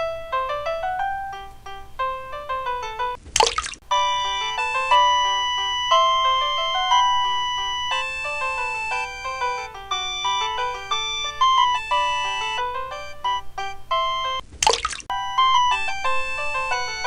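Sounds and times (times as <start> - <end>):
background music of short notes: 3.9 - 14.4, 15.1 - 17.0.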